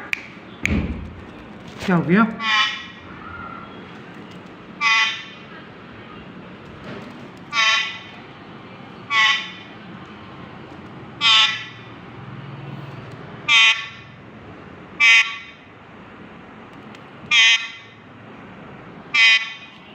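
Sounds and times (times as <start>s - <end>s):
parrot imitating a vehicle horn: 9.1s - 9.6s, 19.2s - 19.7s.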